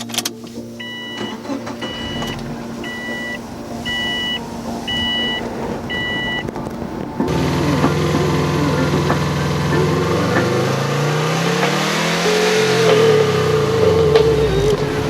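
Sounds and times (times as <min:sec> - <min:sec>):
two-tone warning chime beeps: 0:00.8 - 0:06.5.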